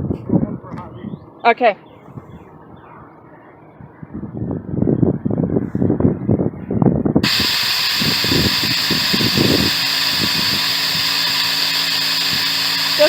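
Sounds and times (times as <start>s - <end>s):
low rumbling hum: 2.0s - 13.0s
compressed air hissing: 7.2s - 13.0s.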